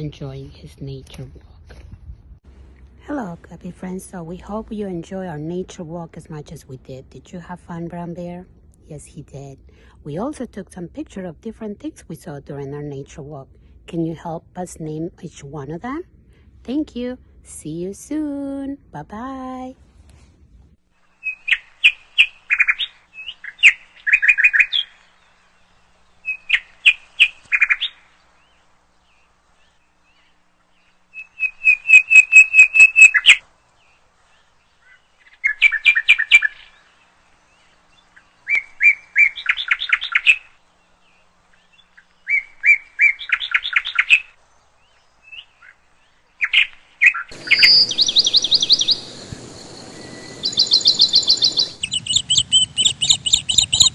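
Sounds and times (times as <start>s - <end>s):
steady background hiss: 2.3s - 53.9s
songbird singing trilled phrases: 21.2s - 34.0s, 34.6s - 53.9s.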